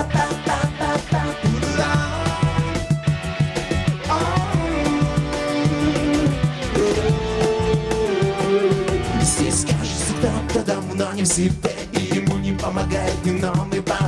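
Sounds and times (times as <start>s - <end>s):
band playing: 0.0s - 13.8s
steady drum beat: 0.0s - 14.0s
long held sliding melody: 4.1s - 10.4s.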